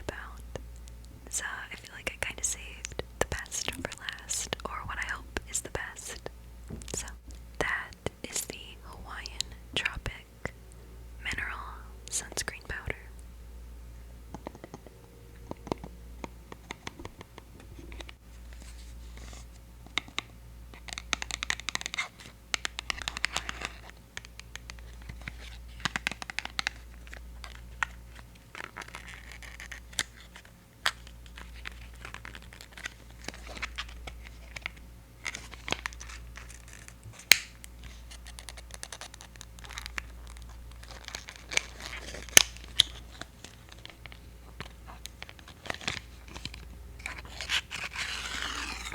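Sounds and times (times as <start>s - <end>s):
scratching and crinkling on container: 20.7s - 48.9s.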